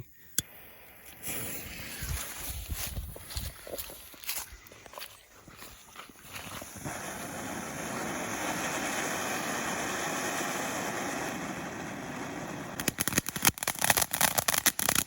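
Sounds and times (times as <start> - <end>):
firework spraying sparks hissing: 0.5 - 2.7, 6.5 - 15.0
sharp crackling pops: 11.7 - 15.0.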